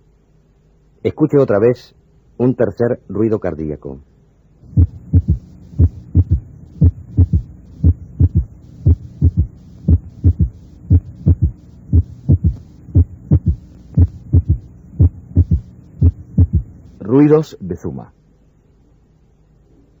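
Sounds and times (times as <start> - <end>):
steady low hum: 0.0 - 20.0
heartbeat triple rhythm: 4.6 - 17.0.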